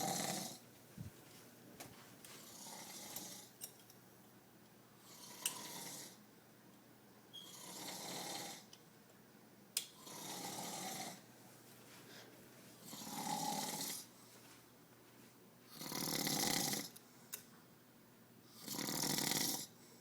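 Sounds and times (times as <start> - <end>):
man snoring: 0.0 - 0.6, 2.4 - 3.5, 5.0 - 6.2, 7.5 - 8.7, 10.0 - 11.2, 12.8 - 14.1, 15.8 - 16.9, 18.6 - 19.7.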